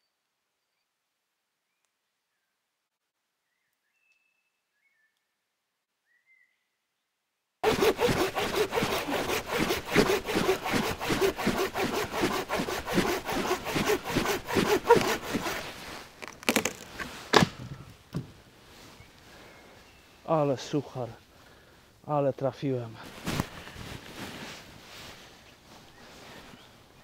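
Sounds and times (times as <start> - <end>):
hand saw cutting wood: 7.6 - 17.5.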